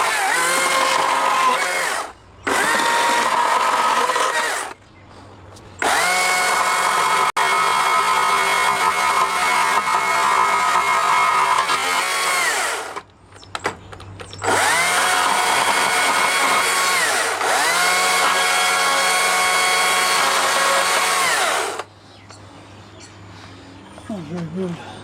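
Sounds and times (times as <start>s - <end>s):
power tool motor carving wood: 0.0s - 4.8s, 5.8s - 13.0s, 14.4s - 21.9s.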